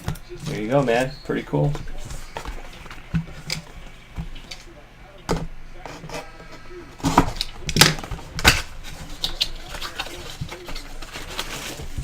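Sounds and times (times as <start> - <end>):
trading cards clicking and rustling: 7.0 - 12.0.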